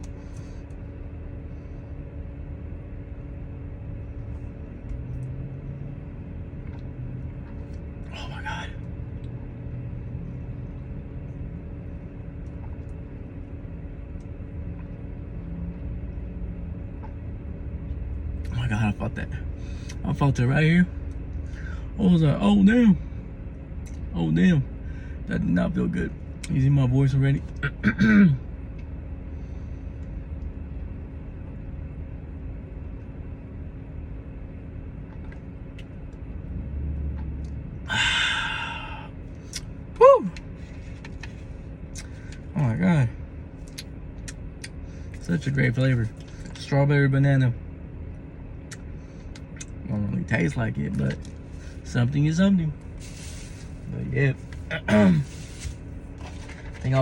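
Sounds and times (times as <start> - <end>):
faint steady hum: 0.0 - 57.0
vehicle engine rumbling: 0.0 - 57.0.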